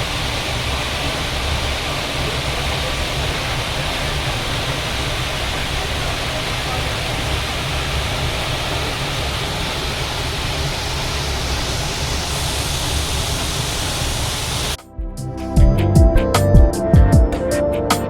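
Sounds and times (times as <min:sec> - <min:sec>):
waterfall rushing: 0:00.0 - 0:14.8
plucked string music: 0:14.8 - 0:18.0.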